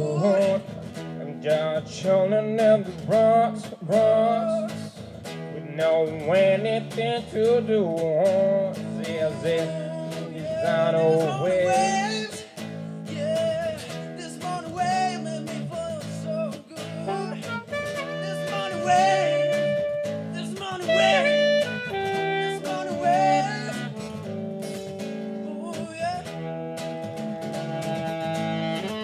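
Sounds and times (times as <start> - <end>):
instrumental song with melodic lead: 16.5 - 29.0.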